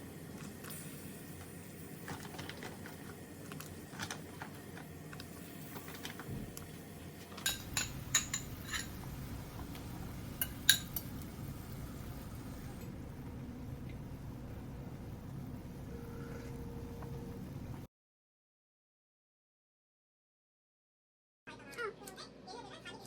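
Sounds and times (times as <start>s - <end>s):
dishes and cutlery clinking: 7.3s - 9.1s, 10.4s - 11.1s
low hum: 7.6s - 17.9s.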